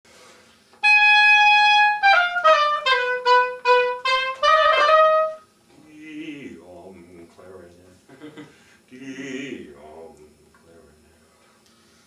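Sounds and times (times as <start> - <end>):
oboe playing: 0.8 - 5.5.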